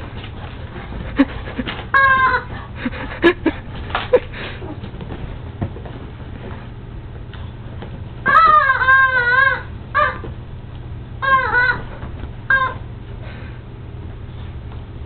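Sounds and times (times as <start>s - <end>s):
squeaky dog toy squawk: 1.9s - 2.5s, 8.3s - 10.3s, 11.2s - 11.9s, 12.5s - 12.8s.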